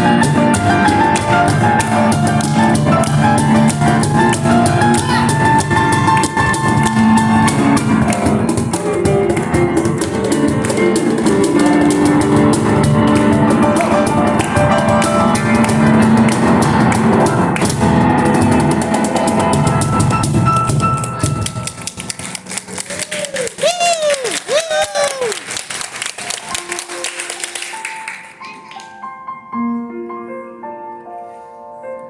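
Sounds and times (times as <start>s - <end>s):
cajon strikes: 0.0s - 22.5s
piano melody and chords: 0.0s - 23.3s, 26.0s - 32.0s.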